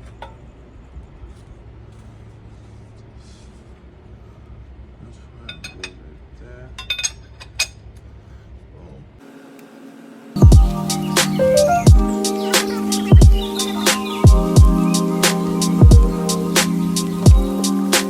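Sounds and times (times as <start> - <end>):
steady low hum: 10.4 - 18.0.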